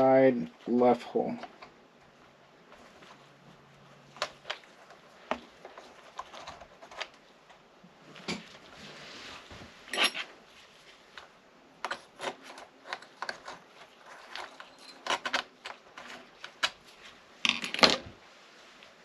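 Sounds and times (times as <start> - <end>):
small metal parts clinking: 11.8 - 16.2.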